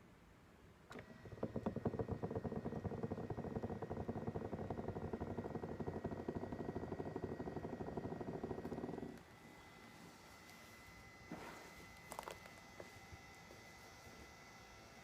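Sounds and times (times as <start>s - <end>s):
thin steady whine: 0.0s - 15.0s
massage mechanism rattling: 0.9s - 9.5s.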